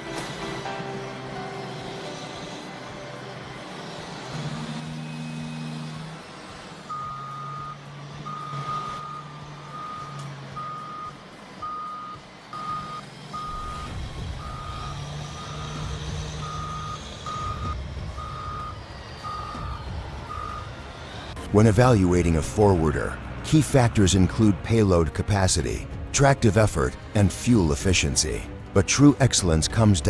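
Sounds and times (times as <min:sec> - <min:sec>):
machine engine running: 0:00.0 - 0:10.6, 0:12.2 - 0:23.9
reversing alarm beeping: 0:06.8 - 0:21.5.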